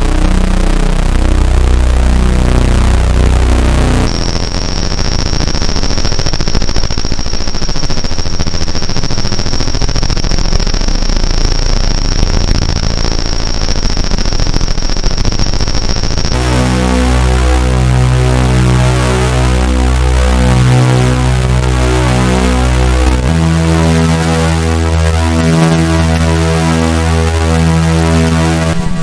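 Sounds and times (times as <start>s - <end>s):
low synth notes: 0.0s - 7.0s, 16.1s - 29.0s
crackling synthesizer texture: 0.0s - 29.0s.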